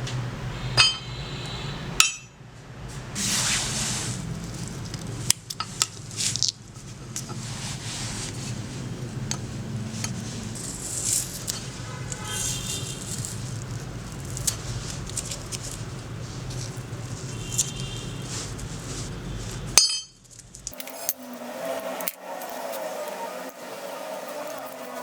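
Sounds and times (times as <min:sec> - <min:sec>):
short ringing tones: 0:00.7 - 0:01.3
metal pruners clinking: 0:19.8 - 0:23.6.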